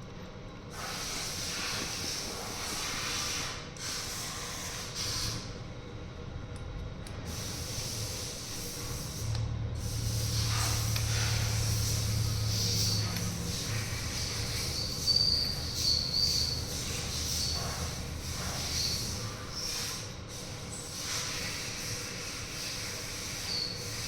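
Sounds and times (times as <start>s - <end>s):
compressed air hissing from blow gun: 0.7s - 5.5s, 7.3s - 24.0s
low steady hum: 5.4s - 15.8s.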